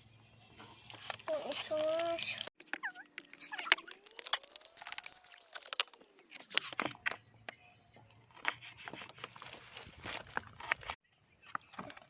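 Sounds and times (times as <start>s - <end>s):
close crunching and clicking: 0.8s - 7.0s, 8.4s - 11.0s.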